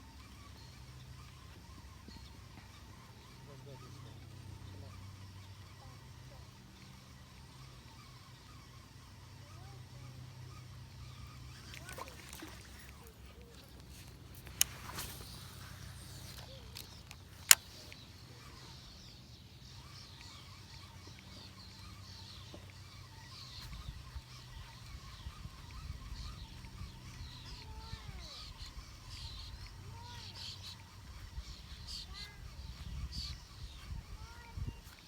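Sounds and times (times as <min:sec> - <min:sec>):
birds chirping: 0:00.0 - 0:35.0
sharp clicks: 0:11.5 - 0:18.1.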